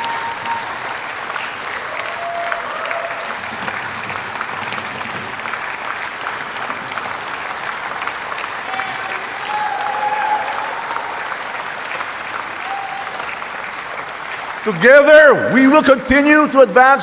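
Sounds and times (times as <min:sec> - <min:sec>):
audience applause: 0:00.0 - 0:16.8.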